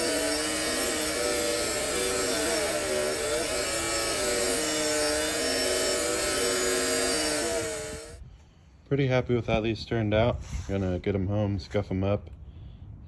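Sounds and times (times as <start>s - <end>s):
power tool whirring on metal: 0.0s - 8.2s
sustained shifting tones: 0.0s - 8.2s.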